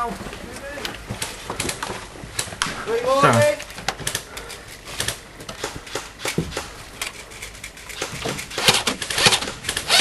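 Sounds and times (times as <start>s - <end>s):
airsoft guns firing: 8.0s - 10.0s.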